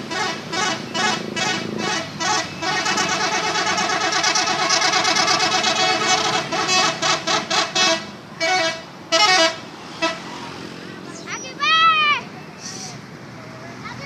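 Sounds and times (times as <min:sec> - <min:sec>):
bus horn playing melody: 0:00.0 - 0:10.5.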